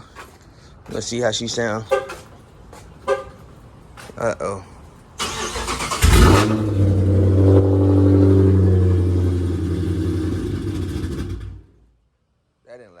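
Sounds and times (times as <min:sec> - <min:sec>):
car engine fast idle: 0:05.2 - 0:07.2.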